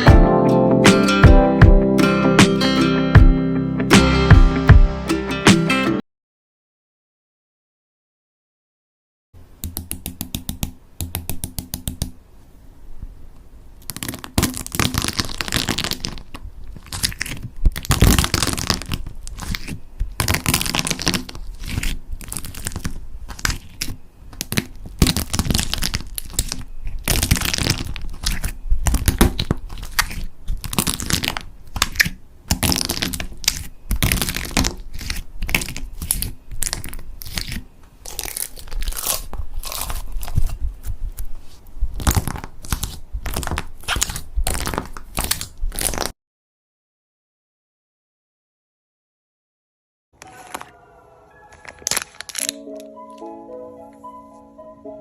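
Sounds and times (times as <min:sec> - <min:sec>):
slime crackling and popping: 0:13.8 - 0:41.3, 0:41.9 - 0:46.1, 0:51.6 - 0:53.3.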